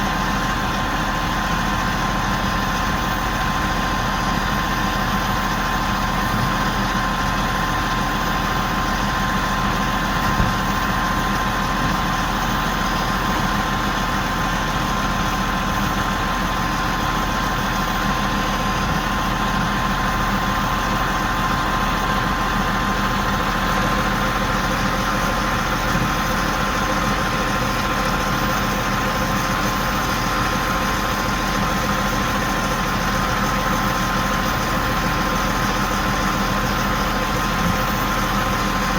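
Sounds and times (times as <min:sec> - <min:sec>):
crane engine idling: 0:00.0 - 0:38.9.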